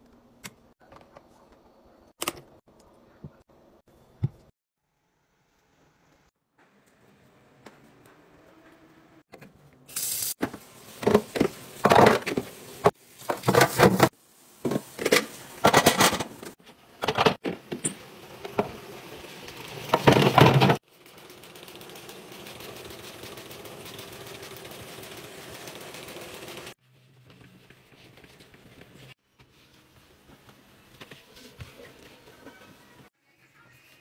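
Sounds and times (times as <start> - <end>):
hard items clicking and clattering: 14.7 - 18.8, 19.9 - 20.8.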